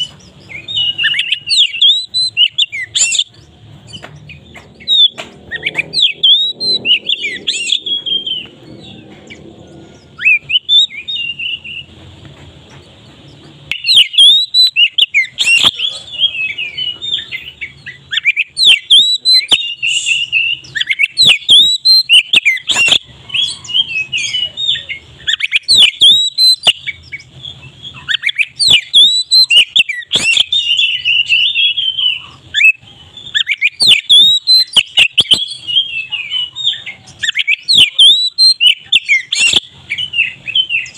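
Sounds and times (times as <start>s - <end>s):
songbird whistling and chattering: 0.0s - 12.0s, 12.7s - 40.9s.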